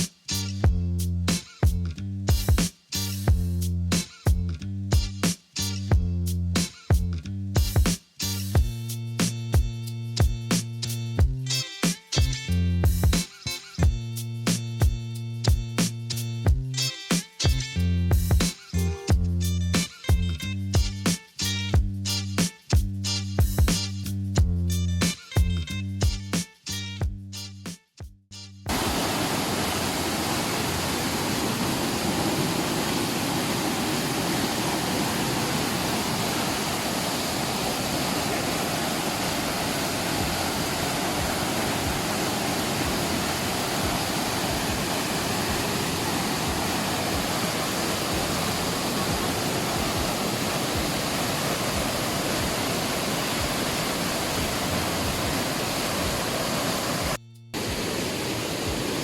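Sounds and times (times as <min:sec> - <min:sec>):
waterfall roaring: 0:28.7 - 0:59.0.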